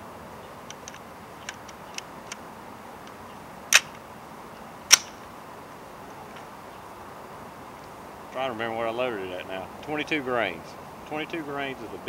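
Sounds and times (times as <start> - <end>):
rifle metallic clicks: 0.7 - 2.4, 3.7 - 4.0, 4.9 - 5.2.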